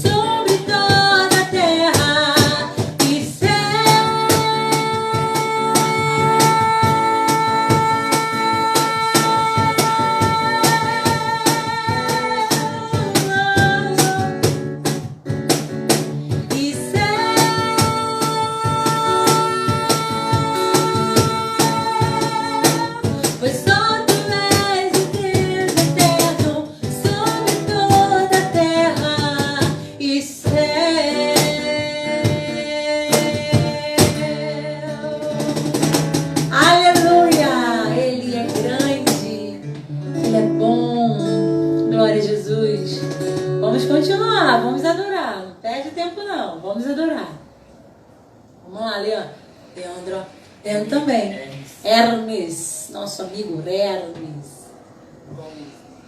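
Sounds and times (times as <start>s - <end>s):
drums and percussion: 0.0s - 40.6s.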